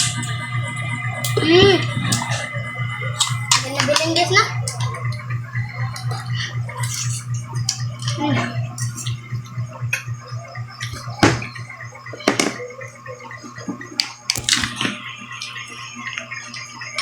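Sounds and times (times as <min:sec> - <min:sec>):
steady low hum: 0:00.0 - 0:17.0
crab shells cracking: 0:14.3 - 0:14.8.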